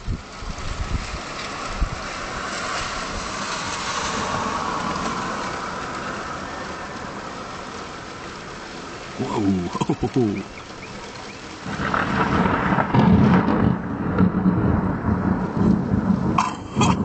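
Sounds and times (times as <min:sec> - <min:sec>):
wind buffeting microphone: 0:00.0 - 0:06.3, 0:10.4 - 0:17.0
heavy rain hissing: 0:00.0 - 0:17.0.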